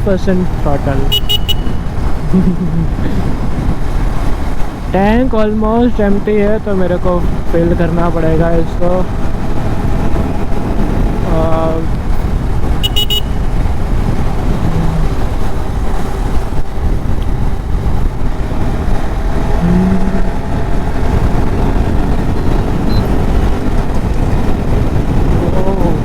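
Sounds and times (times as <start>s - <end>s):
motorcycle engine running: 0.0s - 26.0s
wind noise on microphone: 0.0s - 26.0s
short high-pitched beep: 1.1s - 1.8s.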